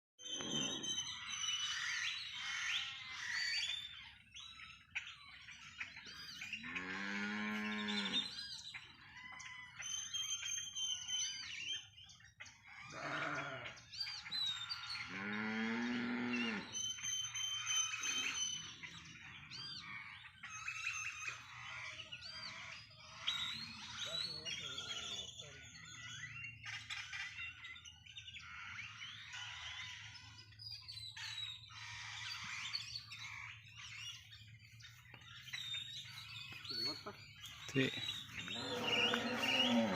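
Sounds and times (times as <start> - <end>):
low drawn-out animal calls: 0.2 - 3.6, 12.8 - 13.9, 36.7 - 39.9
birds chirping and calling: 0.2 - 39.9.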